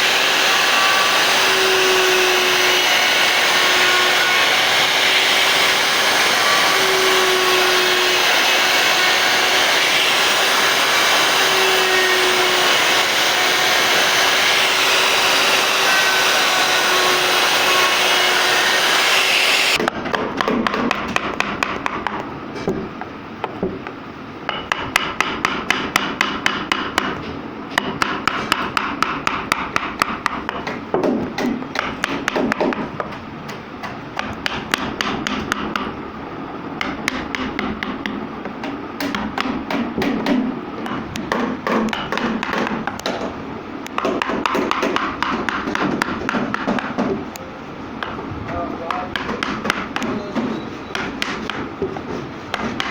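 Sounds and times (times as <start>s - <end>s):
wood router whine: 0.0s - 19.8s.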